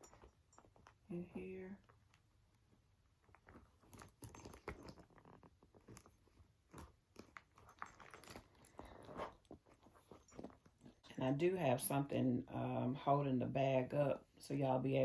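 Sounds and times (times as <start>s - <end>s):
handbag contents rustling and clicking: 0.0s - 11.2s.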